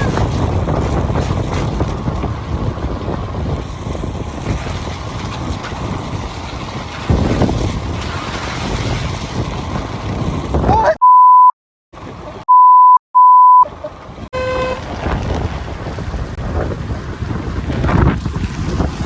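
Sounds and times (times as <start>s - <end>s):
wind on microphone: 0.0s - 10.9s, 13.7s - 19.0s
censor bleep: 11.0s - 11.6s, 12.5s - 13.7s
short buzzy tone: 14.4s - 14.8s.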